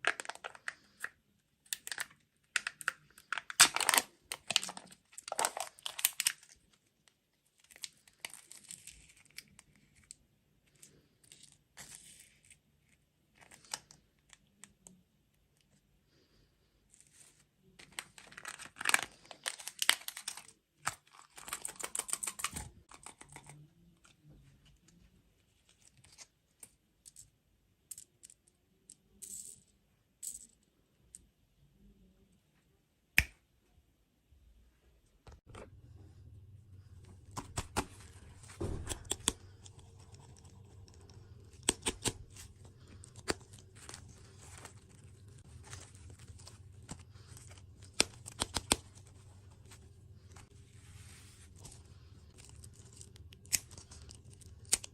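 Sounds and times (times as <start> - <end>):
sweet wrappers crinkling: 0.0 - 12.5, 17.2 - 24.0, 36.8 - 54.9.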